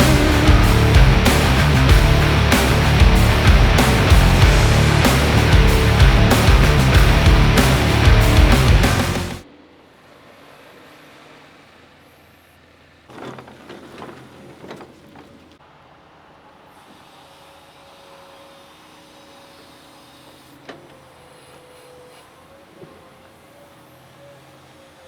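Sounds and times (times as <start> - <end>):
heavy equipment running: 0.0 - 9.4
thin steady whine: 0.0 - 9.4.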